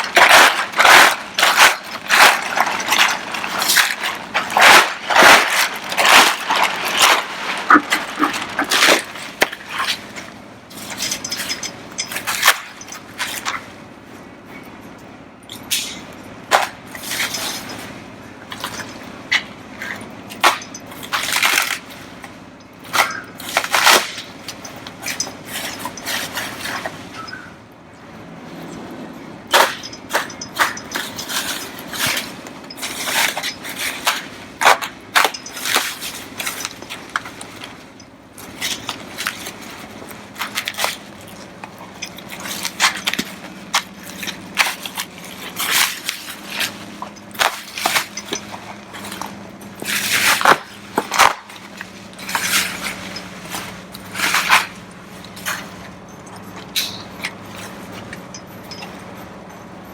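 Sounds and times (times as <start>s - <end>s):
plastic trim clacking and rustling: 0.0s - 10.3s.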